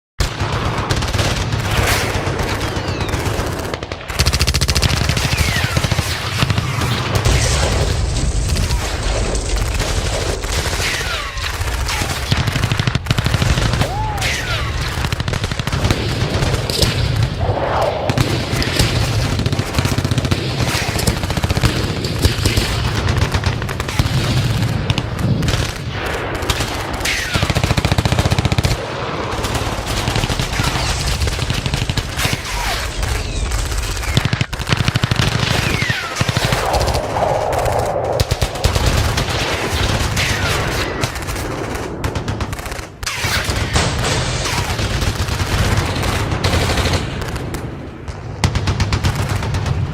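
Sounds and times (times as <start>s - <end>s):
machine-gun and rifle fire: 0.2s - 17.4s, 18.1s - 36.9s, 38.2s - 49.9s
brief falling whine: 36.4s - 39.2s.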